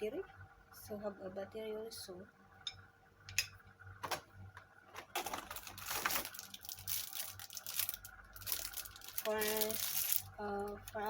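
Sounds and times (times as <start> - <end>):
plastic packaging crinkling: 5.1 - 11.0.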